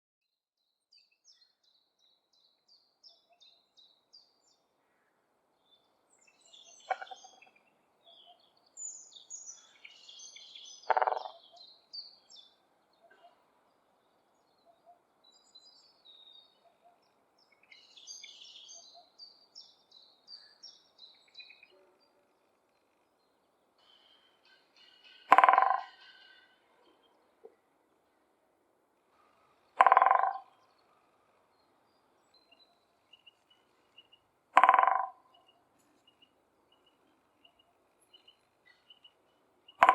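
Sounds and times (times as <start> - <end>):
songbirds singing: 0.6 - 28.4, 29.0 - 39.9
woodpecker drumming on branch: 10.9 - 11.4, 24.8 - 26.6, 29.8 - 30.6, 34.6 - 35.5.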